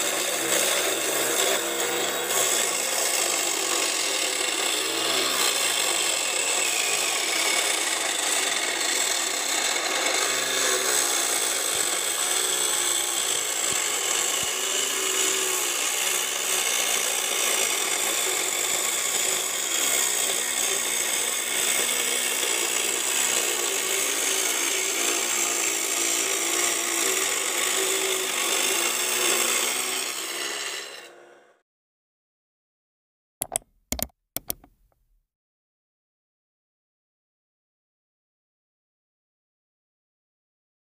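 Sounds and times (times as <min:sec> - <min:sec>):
small saw cutting wood: 0:00.0 - 0:31.6.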